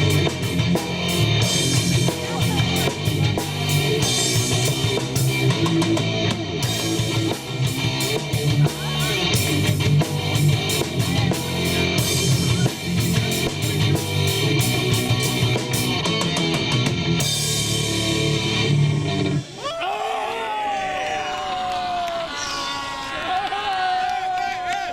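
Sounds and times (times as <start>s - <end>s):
drum kit with cymbal hits: 0.0s - 19.4s
electric guitar: 0.0s - 19.6s.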